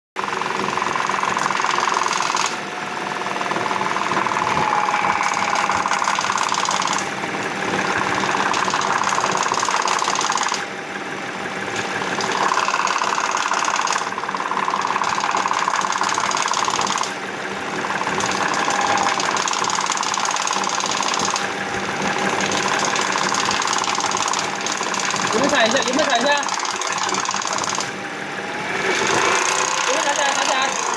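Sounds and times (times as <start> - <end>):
ticking rattle: 5.2 - 7.2, 11.9 - 17.1, 17.8 - 28.0
engine revving: 22.0 - 30.9.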